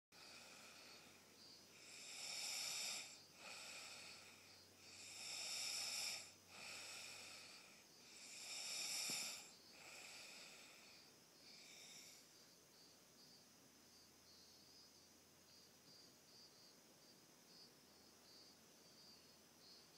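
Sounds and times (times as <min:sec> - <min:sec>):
person snoring: 0:00.2 - 0:12.3.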